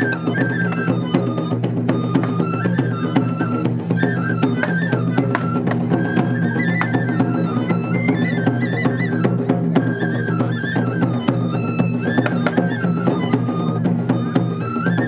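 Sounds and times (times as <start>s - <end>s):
transverse flute melody: 0.0s - 15.0s.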